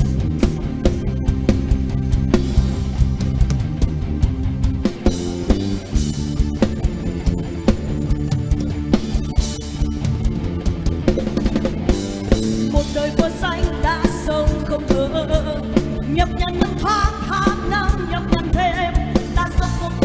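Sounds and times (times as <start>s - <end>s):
drum beat with bass: 0.0s - 20.0s.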